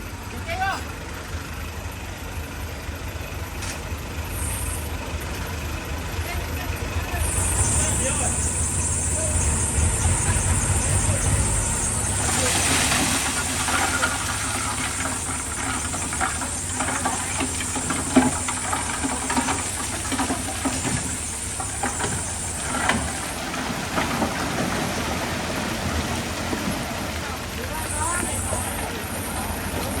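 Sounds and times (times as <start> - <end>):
diesel earthmoving machinery running: 0.0 - 30.0
knocks and clatters: 10.1 - 25.6.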